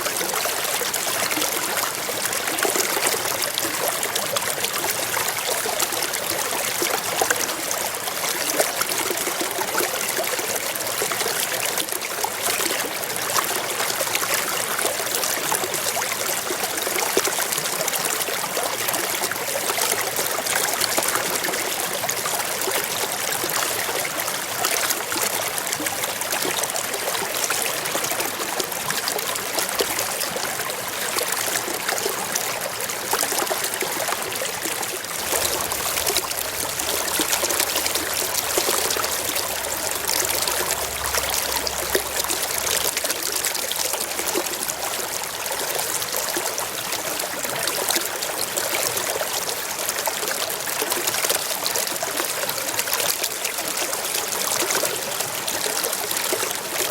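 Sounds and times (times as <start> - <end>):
stream flowing over rocks: 0.0 - 56.9.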